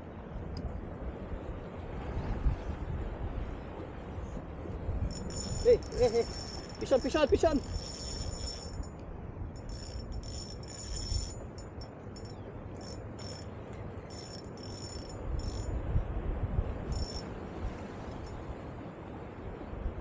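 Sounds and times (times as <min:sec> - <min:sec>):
wind buffeting microphone: 0:00.7 - 0:12.3, 0:14.2 - 0:18.6
faint high whine: 0:03.6 - 0:19.6.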